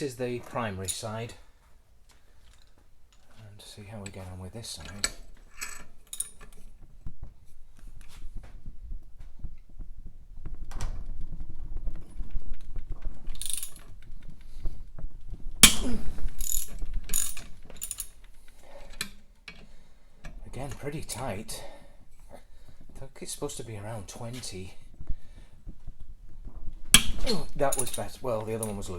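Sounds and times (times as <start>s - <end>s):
ratchet clicks: 13.4s - 13.8s, 15.6s - 18.2s
loud sharp crack: 15.6s - 16.4s, 27.0s - 27.5s
metal knocks: 15.6s - 18.0s, 26.9s - 28.9s.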